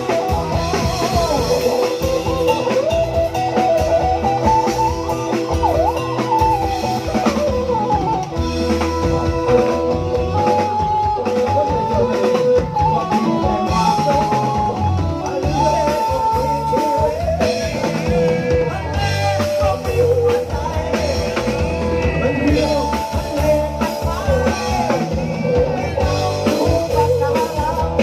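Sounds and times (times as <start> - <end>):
brass band melody: 0.0 - 17.9
bass: 0.0 - 28.0
drum kit steady beat: 0.0 - 28.0.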